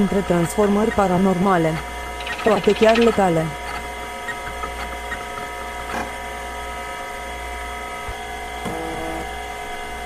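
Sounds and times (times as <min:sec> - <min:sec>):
electronic drone of held tones: 0:01.8 - 0:05.8, 0:06.5 - 0:10.0.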